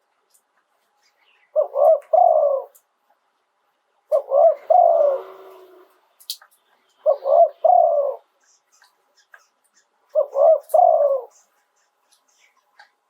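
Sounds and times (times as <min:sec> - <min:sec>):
dove cooing: 0:01.5 - 0:02.8, 0:04.1 - 0:06.0, 0:07.0 - 0:08.3, 0:10.1 - 0:11.5.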